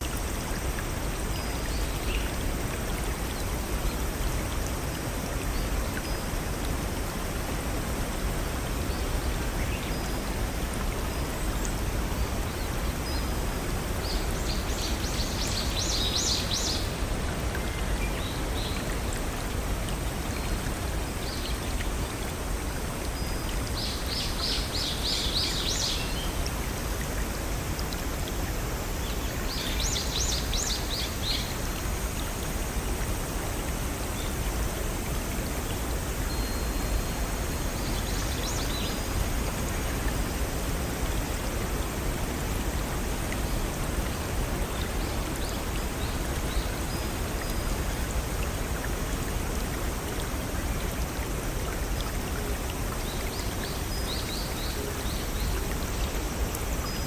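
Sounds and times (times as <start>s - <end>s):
brook running: 0.0s - 57.0s.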